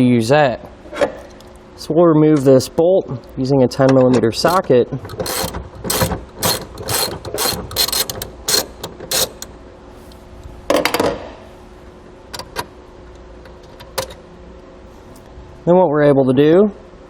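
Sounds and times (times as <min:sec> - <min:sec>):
socket ratchet clicking: 0:04.4 - 0:09.6.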